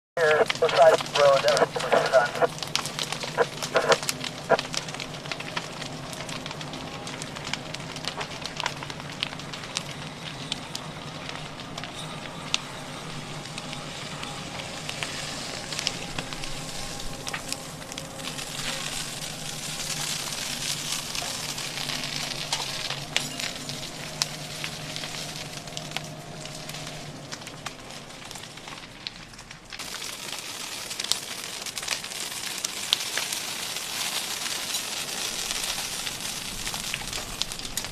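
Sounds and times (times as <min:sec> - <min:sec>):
steady low hum: 0:00.2 - 0:29.8
crackling of burning wood: 0:00.2 - 0:37.9.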